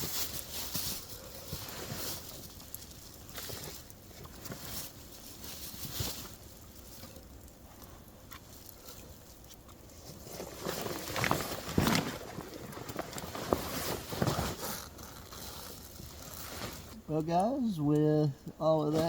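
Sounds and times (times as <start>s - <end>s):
fabric and gear rustling: 10.1s - 17.0s.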